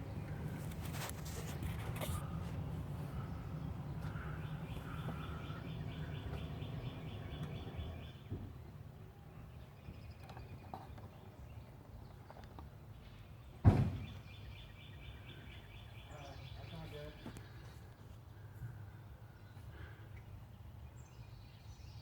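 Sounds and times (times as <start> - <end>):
sharp thump: 13.6 - 14.2.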